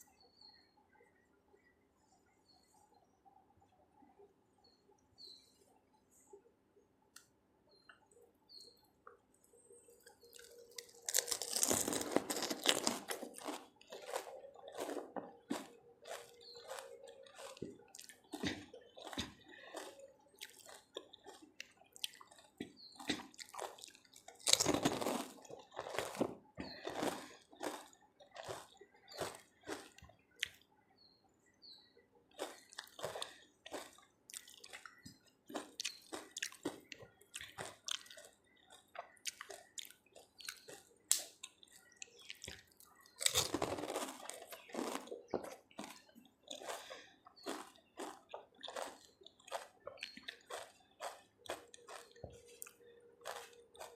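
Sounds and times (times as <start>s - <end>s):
wet chewing: 9.0s - 30.6s, 32.3s - 53.9s
crisp shells cracking: 10.4s - 17.6s, 43.2s - 45.1s.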